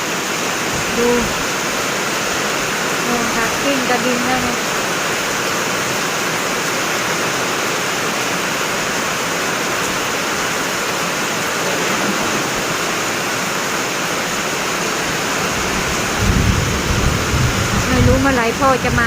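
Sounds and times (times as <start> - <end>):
heavy rain pouring: 0.0 - 19.0
strong wind: 8.8 - 19.0.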